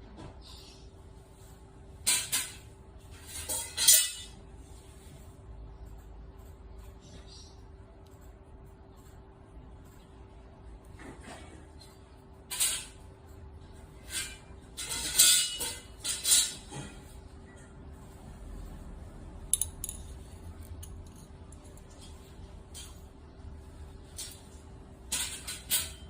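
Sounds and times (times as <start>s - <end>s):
metal clinks and scrapes: 2.0s - 4.4s, 14.0s - 17.1s, 19.5s - 23.2s.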